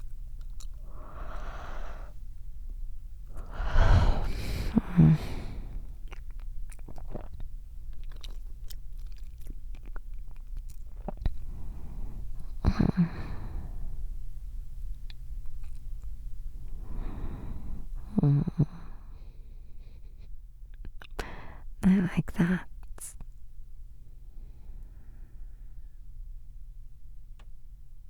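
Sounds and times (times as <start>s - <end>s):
wet mouth clicks: 0.0s - 1.2s, 5.9s - 11.4s, 15.0s - 16.1s, 20.7s - 21.3s
close breathing: 0.8s - 2.2s, 3.3s - 6.1s, 11.3s - 14.1s, 16.6s - 20.3s, 21.2s - 21.7s, 24.3s - 26.0s.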